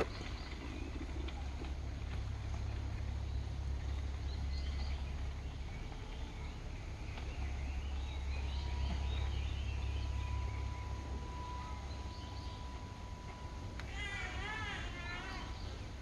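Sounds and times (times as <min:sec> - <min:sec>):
birds chirping: 0:00.0 - 0:16.0
low rumble: 0:00.0 - 0:16.0
thin high tone: 0:08.1 - 0:15.9.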